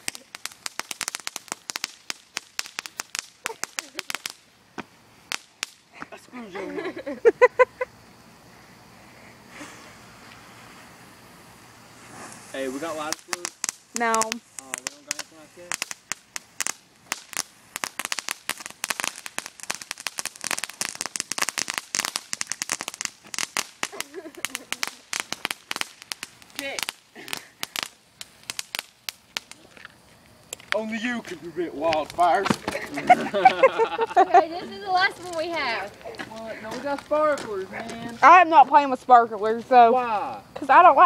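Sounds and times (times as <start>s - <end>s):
firecrackers cracking: 0.0s - 6.2s, 9.5s - 41.0s
voices: 6.0s - 8.0s, 12.3s - 15.8s, 30.6s - 41.0s.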